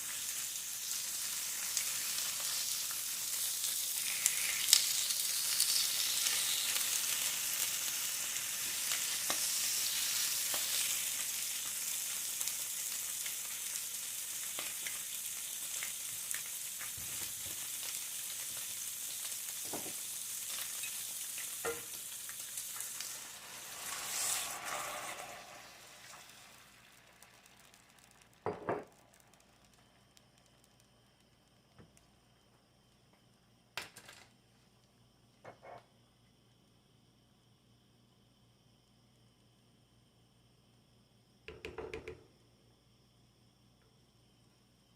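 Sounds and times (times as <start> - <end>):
food sizzling in a pan: 0.0 - 33.3.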